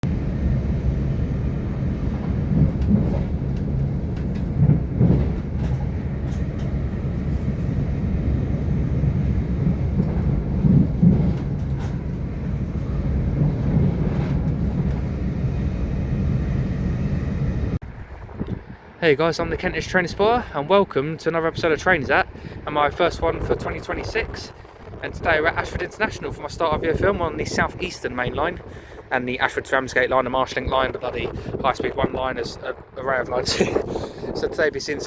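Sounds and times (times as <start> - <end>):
train rumbling on rails: 0.0 - 35.0
wheels knocking: 1.6 - 16.3.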